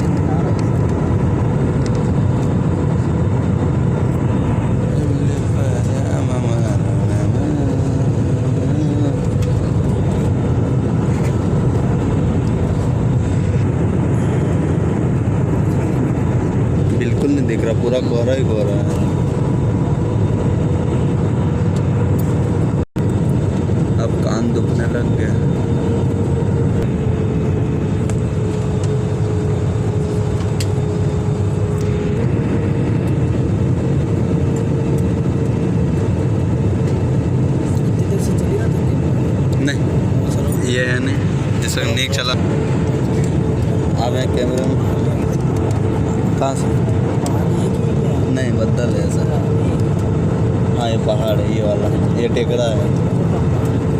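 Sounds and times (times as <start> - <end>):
airliner cabin engine rumble: 0.0 - 53.9
rushing air: 6.7 - 17.5.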